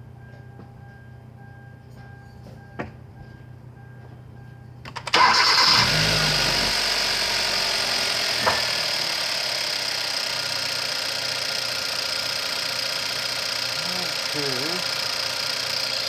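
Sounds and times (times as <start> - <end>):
car engine starting and idling: 4.8 - 16.0.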